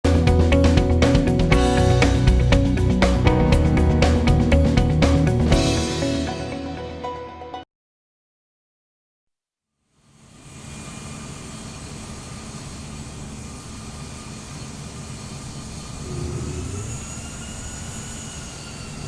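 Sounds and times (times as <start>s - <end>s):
jet engine starting up: 10.3s - 19.0s
faint high whining tones: 14.6s - 19.0s.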